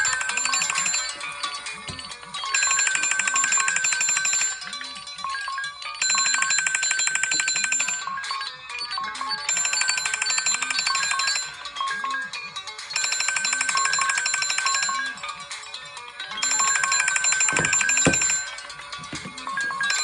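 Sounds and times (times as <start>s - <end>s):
fast trilling phone ring: 0.0s - 1.6s, 2.4s - 5.1s, 6.0s - 8.4s, 9.5s - 12.2s, 13.0s - 15.5s, 16.4s - 18.9s, 19.6s - 20.0s
repeating melodic ringtone: 0.0s - 20.0s.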